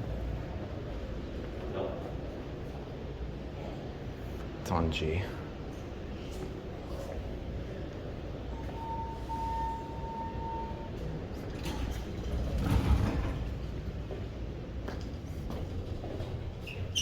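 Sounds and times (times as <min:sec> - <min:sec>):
elevator doors sliding: 0:08.3 - 0:17.0.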